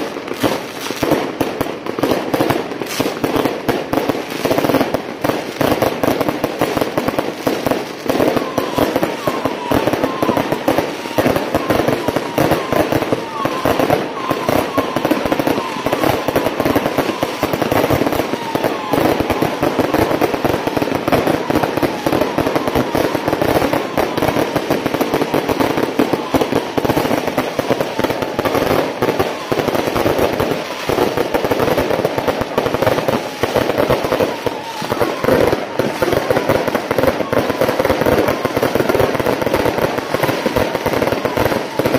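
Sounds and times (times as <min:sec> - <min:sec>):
firecrackers crackling: 0:00.0 - 0:41.9.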